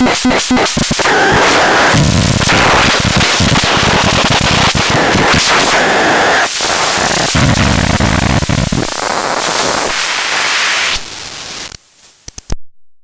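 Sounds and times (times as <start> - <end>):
synthesizer harsh crackling noise: 0.0 - 12.5
clicks and pops: 11.7 - 12.6.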